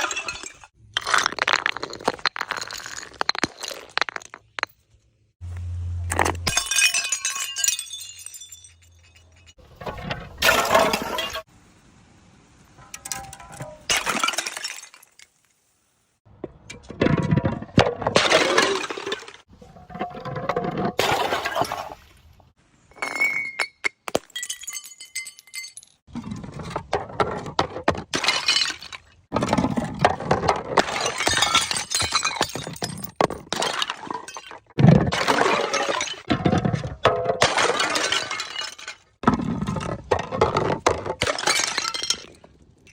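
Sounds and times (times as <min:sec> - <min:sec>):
glass bottles smashing: 0:00.0 - 0:04.8, 0:06.1 - 0:11.5, 0:13.0 - 0:15.4, 0:20.7 - 0:21.9, 0:22.9 - 0:26.0, 0:27.9 - 0:42.9
glass clinking and ringing: 0:06.4 - 0:09.6, 0:23.0 - 0:26.0.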